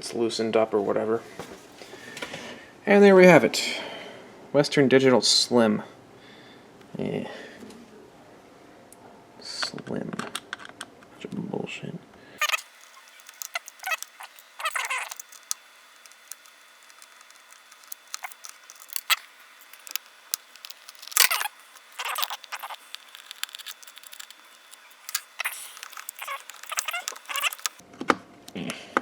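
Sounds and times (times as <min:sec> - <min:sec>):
small hard parts clicking and scraping: 0:12.4 - 0:27.8.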